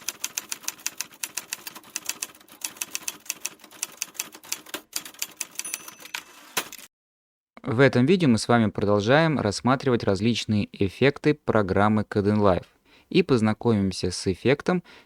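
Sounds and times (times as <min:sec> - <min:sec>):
typewriter keys clacking: 0:00.0 - 0:06.9.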